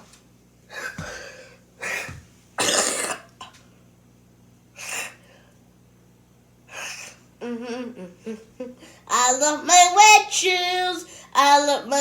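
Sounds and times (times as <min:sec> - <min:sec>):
person coughing: 0:01.8 - 0:03.5.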